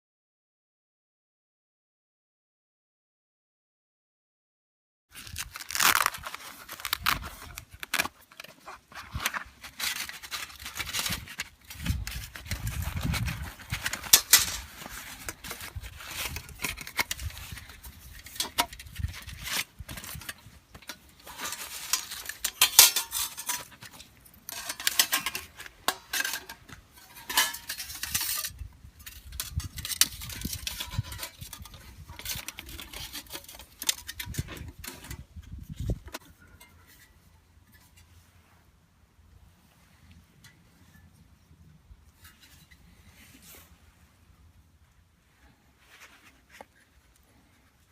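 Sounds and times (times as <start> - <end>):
tearing and crinkling: 5.1 - 28.5.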